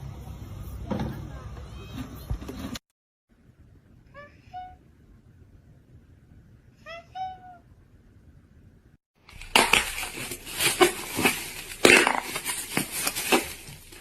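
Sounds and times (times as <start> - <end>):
clattering and crashing: 9.3 - 14.0.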